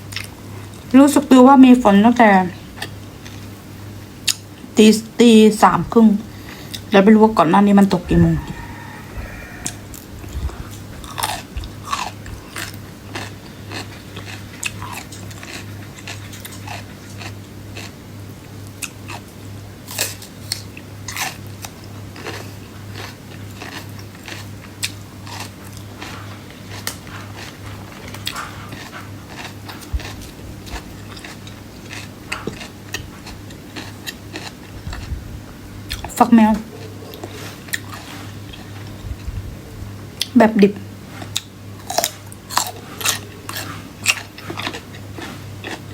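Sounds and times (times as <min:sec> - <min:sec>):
steady low hum: 0:00.0 - 0:45.9
person chewing crunchy food: 0:08.0 - 0:39.4, 0:41.0 - 0:45.9.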